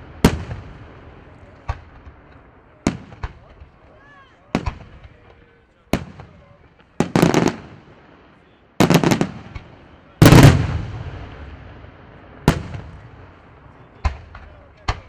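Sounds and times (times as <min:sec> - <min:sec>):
fireworks bursting: 0:00.0 - 0:15.0.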